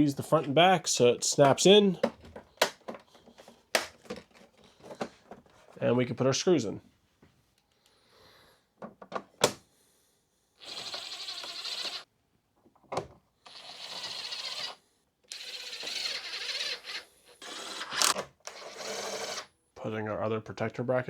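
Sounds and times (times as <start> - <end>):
electric screwdriver whirring: 10.6 - 12.0, 13.5 - 19.5.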